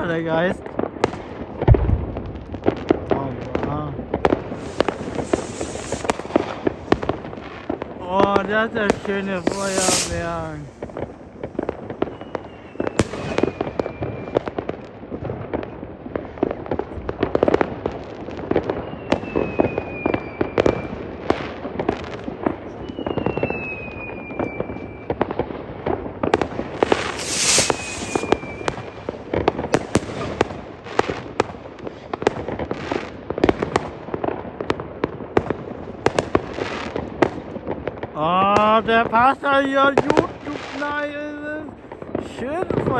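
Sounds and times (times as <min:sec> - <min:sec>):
fireworks bangs and crackles: 0:00.0 - 0:42.9
whistling rockets: 0:04.4 - 0:07.3, 0:08.8 - 0:14.5, 0:18.7 - 0:21.0, 0:22.7 - 0:25.2, 0:26.8 - 0:30.4
loud hissing burst: 0:04.5 - 0:06.9, 0:08.8 - 0:11.0, 0:26.8 - 0:28.7.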